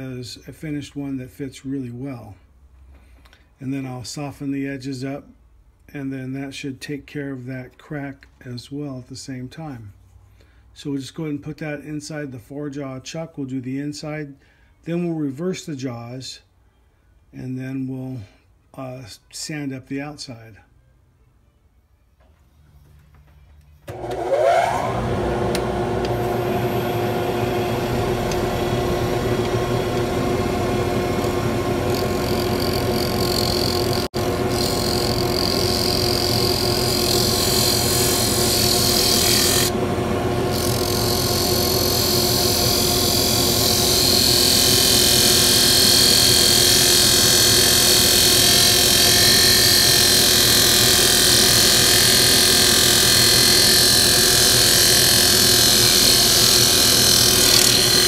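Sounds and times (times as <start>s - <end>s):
lathe motor whining: 23.9s - 58.0s
tool hissing on spinning wood: 30.8s - 39.8s, 40.4s - 58.0s.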